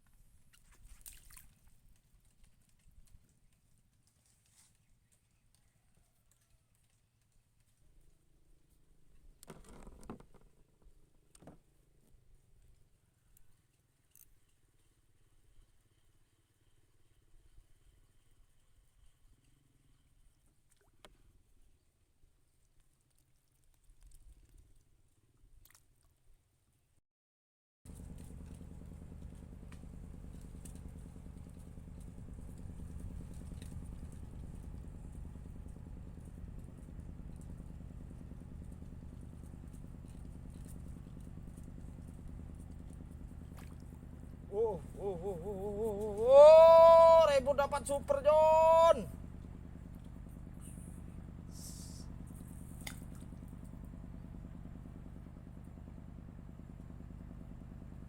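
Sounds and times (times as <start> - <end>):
engine running steadily: 27.9 - 58.0
brief hiss: 51.5 - 52.1.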